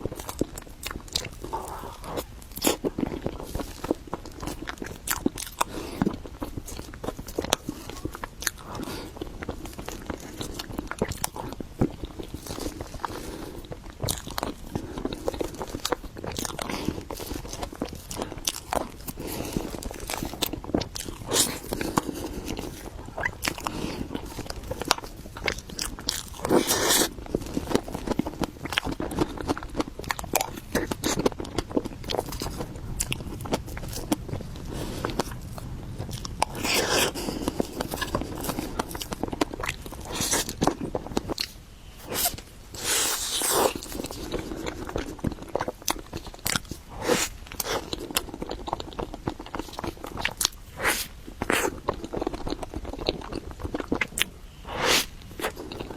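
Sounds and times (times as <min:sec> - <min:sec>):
chewing with wet clicks and smacks: 0:00.0 - 0:55.9.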